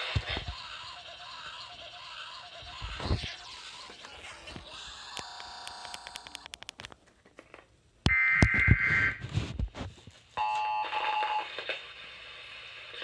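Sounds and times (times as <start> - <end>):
noisy radio audio: 0.0 - 7.1, 8.1 - 13.0
clicks: 4.0 - 8.6.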